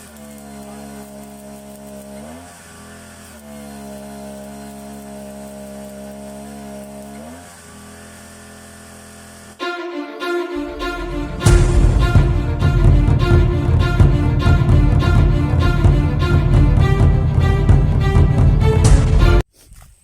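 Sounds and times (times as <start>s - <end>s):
small engine running: 0.0s - 19.4s
loud music: 9.6s - 19.4s.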